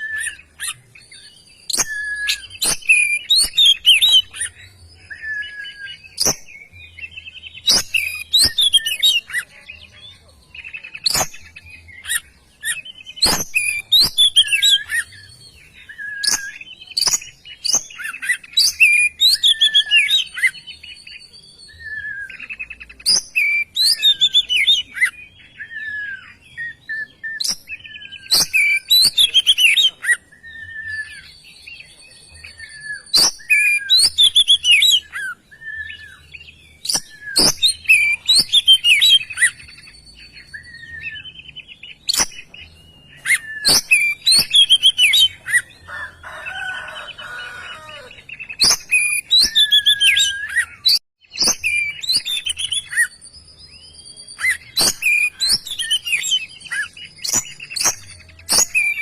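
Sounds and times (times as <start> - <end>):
bird singing: 0.0 - 59.0
sharp click-like bird notes: 57.2 - 59.0.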